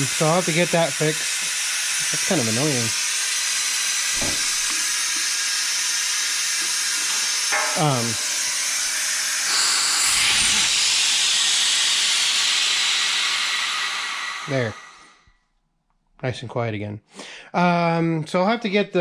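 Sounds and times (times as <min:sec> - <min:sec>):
compressed air hissing: 0:00.0 - 0:15.2.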